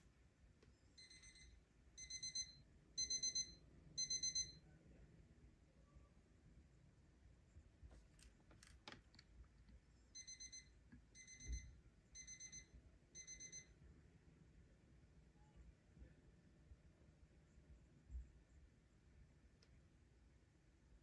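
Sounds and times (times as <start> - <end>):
alarm clock beeping: 1.0 - 4.6, 10.1 - 13.8.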